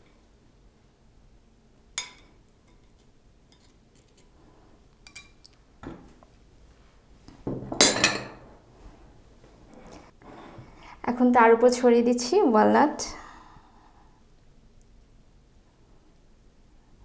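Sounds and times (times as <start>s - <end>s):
utensils clattering: 7.8s - 8.4s
utensils clinking against dishes: 7.8s - 8.4s.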